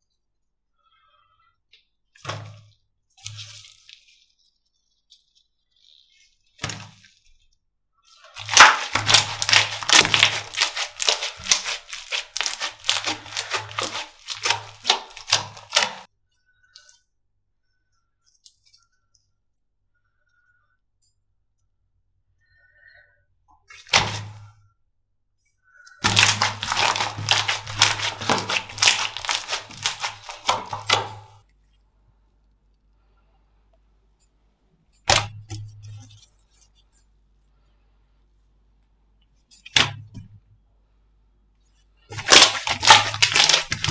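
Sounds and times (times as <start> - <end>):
slime crackling and popping: 8.3 - 16.1, 23.9 - 24.4, 26.0 - 31.4, 42.1 - 43.9
slime crunch: 8.3 - 16.1, 23.9 - 24.4, 26.0 - 31.4, 42.1 - 43.9.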